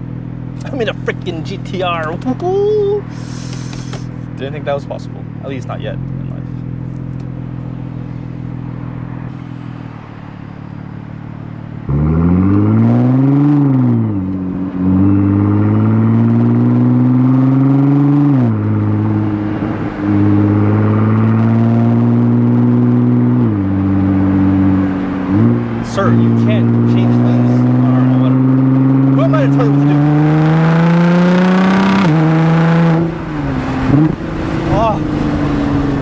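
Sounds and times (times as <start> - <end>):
car engine accelerating: 0.0 - 36.0.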